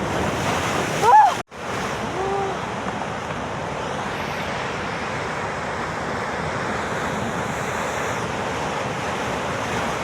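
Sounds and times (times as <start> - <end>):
sea surf breaking: 0.0 - 3.2.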